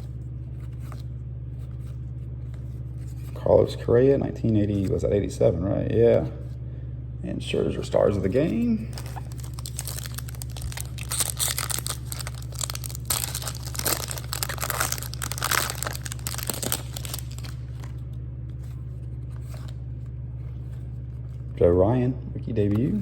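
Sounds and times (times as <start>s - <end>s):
plastic wrapper crinkling and tearing: 8.9s - 18.1s.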